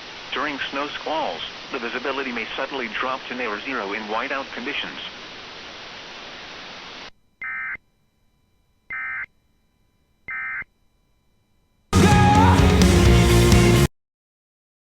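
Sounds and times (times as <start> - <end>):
radio hiss: 0.0 - 7.8
loud music: 12.0 - 13.9.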